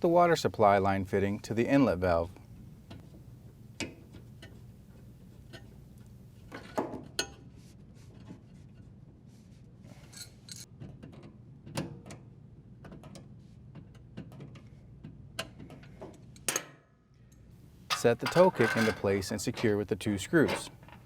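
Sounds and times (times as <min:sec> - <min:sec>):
hand tool scraping fitting: 0:17.9 - 0:21.0.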